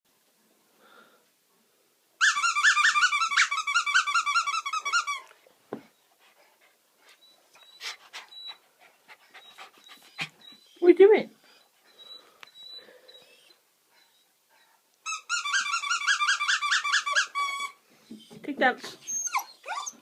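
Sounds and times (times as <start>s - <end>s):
dog whining in high squeaks: 2.2s - 5.3s, 7.2s - 8.6s, 9.4s - 10.9s, 11.5s - 14.4s, 15.0s - 20.0s.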